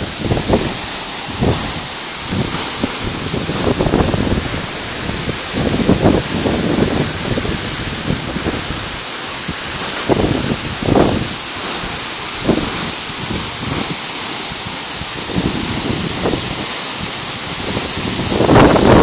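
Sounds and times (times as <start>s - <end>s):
waterfall rushing: 0.0s - 19.0s
wind buffeting microphone: 0.0s - 19.0s.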